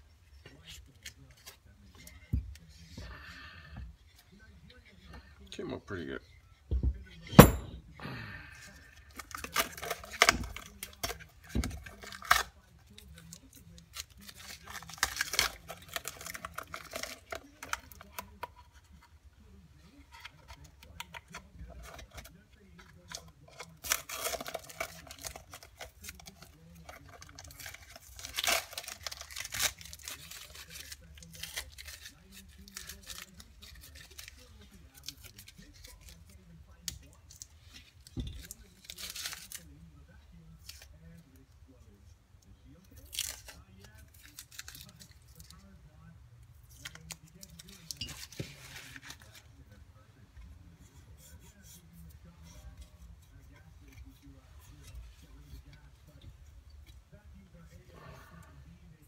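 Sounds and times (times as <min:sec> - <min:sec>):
low steady hum: 0:00.0 - 0:59.0
light rubbing and scraping: 0:46.7 - 0:59.0.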